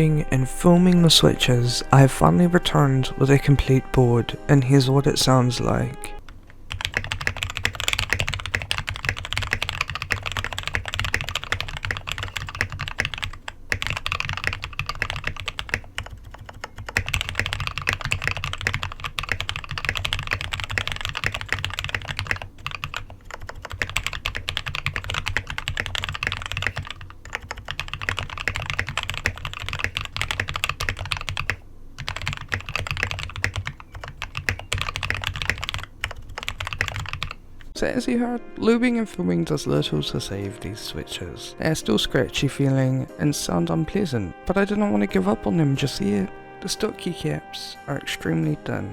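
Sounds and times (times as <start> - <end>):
fast typing on mechanical keyboard: 6.7 - 37.4.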